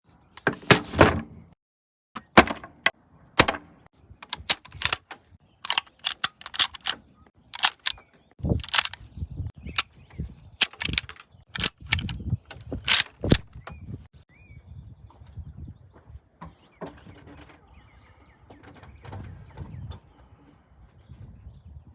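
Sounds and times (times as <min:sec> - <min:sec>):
rifle bolt clacking: 0:04.2 - 0:09.0, 0:10.6 - 0:13.6.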